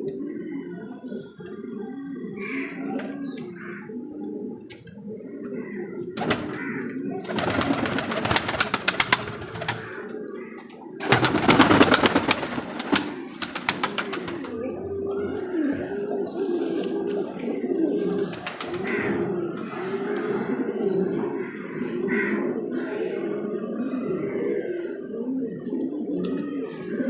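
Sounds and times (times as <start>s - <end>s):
pigeons cooing: 0.0s - 27.0s
rapid clattering bursts: 11.0s - 14.5s.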